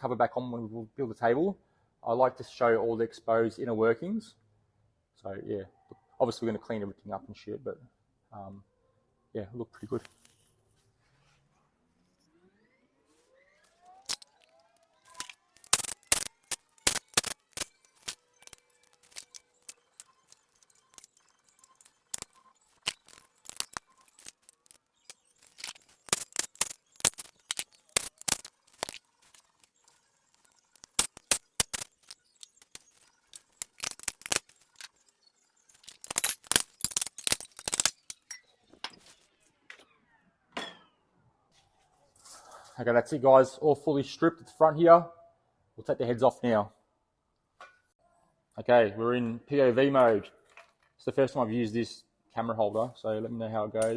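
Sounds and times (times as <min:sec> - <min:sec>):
metal tools clinking and clattering: 0:14.0 - 0:39.2.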